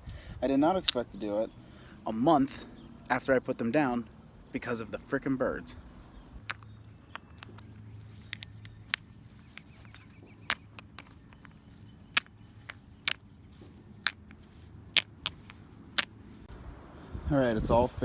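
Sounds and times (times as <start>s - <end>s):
stones clacking: 0.8s - 1.3s, 6.4s - 16.5s.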